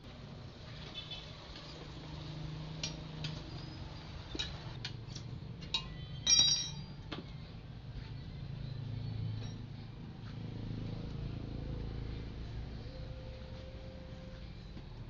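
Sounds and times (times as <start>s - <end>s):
metal tools clinking on metal: 2.8s - 7.1s, 9.4s - 9.7s
ringing metal clank: 5.7s - 7.0s.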